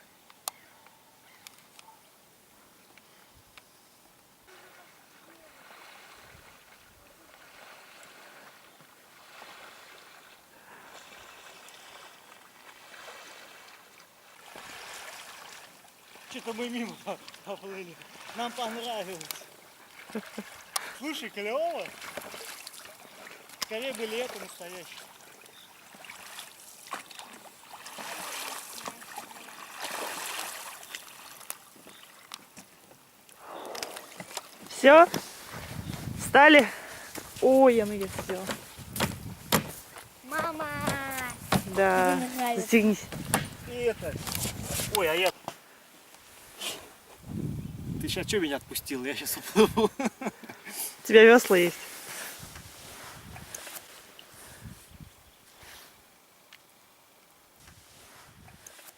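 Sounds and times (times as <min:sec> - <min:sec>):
water lapping around boat: 0:04.5 - 0:45.3
light knocks against hull: 0:38.1 - 0:42.1, 0:43.1 - 0:43.6.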